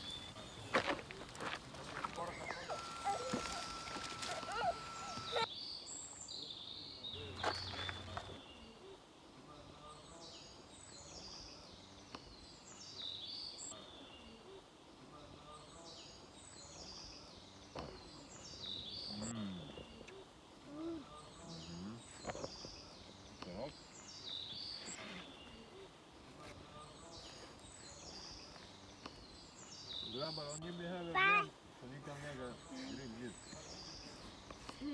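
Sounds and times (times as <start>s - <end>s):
small songbird singing: 0.0s - 8.9s, 15.4s - 31.6s, 32.5s - 34.9s
outdoor background hiss: 0.0s - 34.9s.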